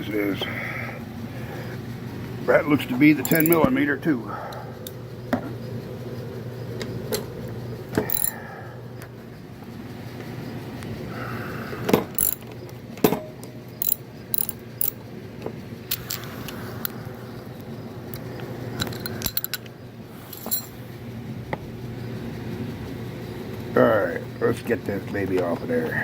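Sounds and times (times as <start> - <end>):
metal tools clinking: 3.0 - 3.9, 8.0 - 8.4, 12.1 - 15.0, 18.8 - 20.8
socket wrench ratcheting: 3.2 - 3.7, 8.0 - 8.4, 12.1 - 12.6, 13.8 - 15.0, 15.9 - 16.6, 18.1 - 19.7, 20.3 - 20.8.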